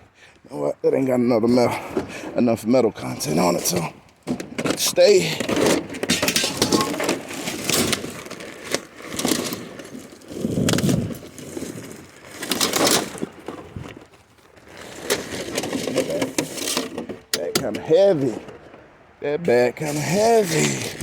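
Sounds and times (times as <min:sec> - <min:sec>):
trash bags rustling: 0:03.0 - 0:18.9, 0:19.7 - 0:21.0
junk clattering: 0:03.5 - 0:19.0.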